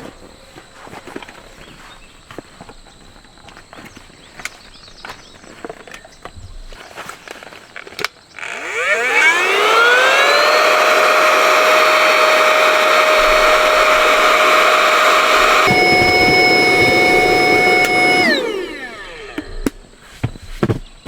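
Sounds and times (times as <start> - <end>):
small electric motor whine: 8.4 - 20.4.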